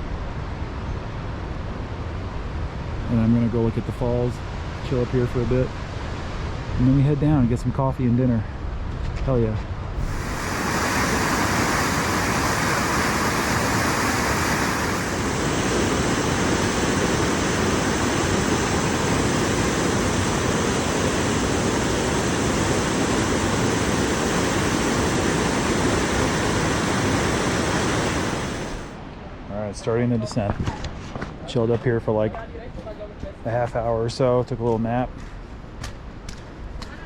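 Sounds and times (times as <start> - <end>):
waterfall rushing: 10.0 - 29.0.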